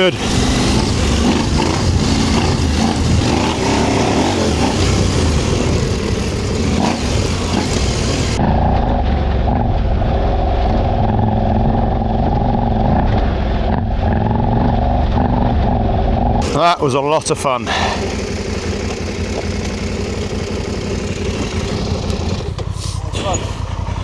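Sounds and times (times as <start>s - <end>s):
motorcycle engine under throttle: 0.0s - 24.0s
wind rush on microphone: 0.2s - 16.5s.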